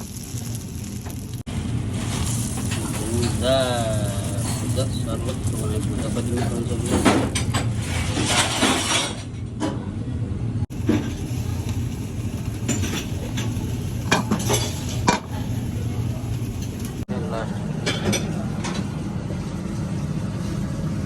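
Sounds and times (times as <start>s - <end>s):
metal utensils scraping a pan: 2.0s - 9.3s.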